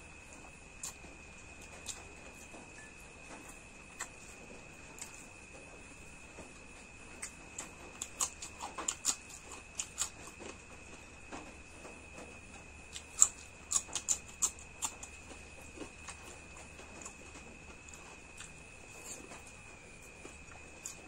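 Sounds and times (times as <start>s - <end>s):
chewing clicks: 0.8s - 2.6s, 3.3s - 4.4s, 5.0s - 5.4s, 7.2s - 10.6s, 12.9s - 21.0s.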